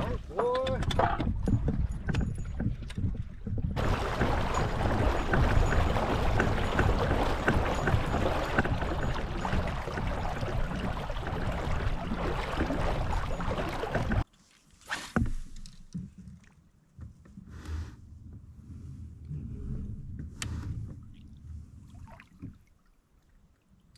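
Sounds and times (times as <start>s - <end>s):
wind rumbling on microphone: 0.8s - 14.2s
water rushing: 3.8s - 14.2s.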